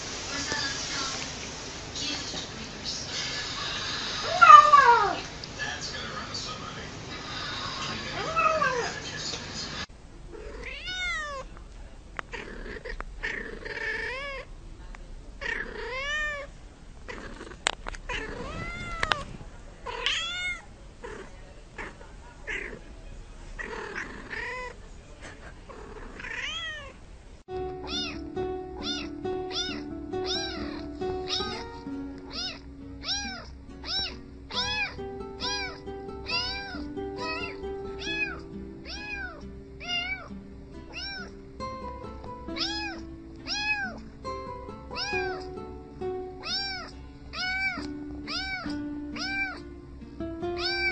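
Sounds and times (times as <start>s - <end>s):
cats meowing: 4.2s - 5.3s, 7.9s - 9.0s, 10.3s - 11.5s, 12.3s - 14.5s, 15.4s - 16.5s, 17.1s - 22.8s, 23.6s - 24.8s, 25.8s - 27.0s, 27.8s - 40.3s, 40.9s - 41.4s, 42.5s - 44.2s, 44.9s - 45.5s, 46.4s - 49.7s, 50.6s - 50.9s
musical backing of held notes: 27.5s - 50.9s.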